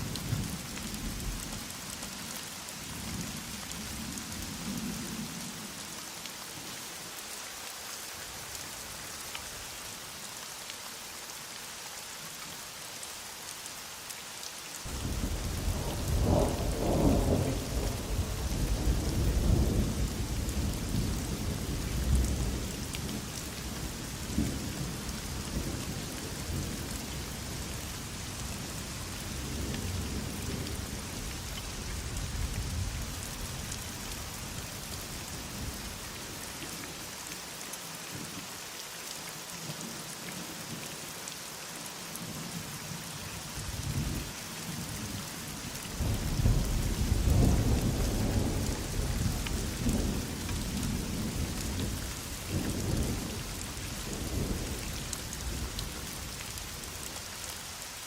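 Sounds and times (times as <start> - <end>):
heavy rain hissing: 0.0 - 41.6, 42.2 - 58.0
thunder rumbling: 14.9 - 22.7, 46.0 - 53.3.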